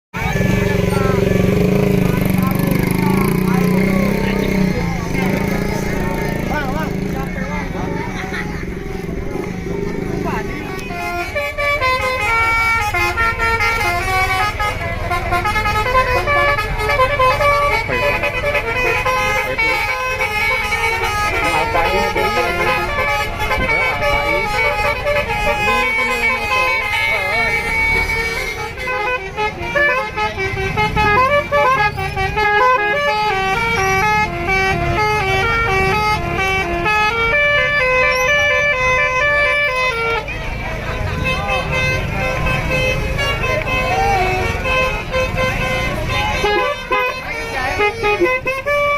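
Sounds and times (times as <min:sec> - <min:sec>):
bus engine rumble: 0:00.2 - 0:48.9
musical air horn playing a tune: 0:10.7 - 0:48.9.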